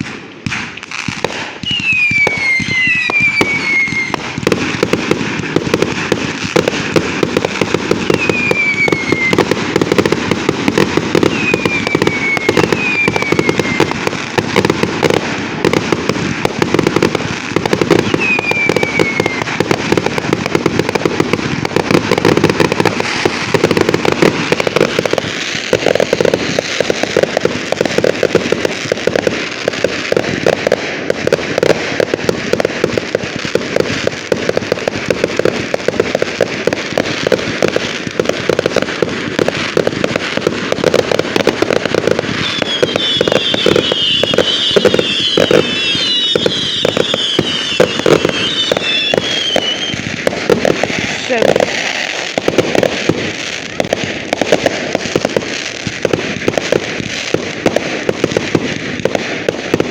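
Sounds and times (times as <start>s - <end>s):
falling firework whistles: 0.0s - 5.0s, 7.3s - 15.9s, 16.6s - 29.0s, 40.1s - 54.6s
fireworks popping and cracking: 0.0s - 59.9s.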